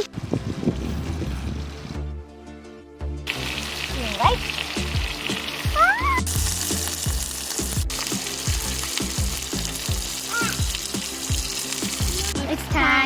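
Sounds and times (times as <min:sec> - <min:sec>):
fish frying in a pan: 0:03.3 - 0:12.4.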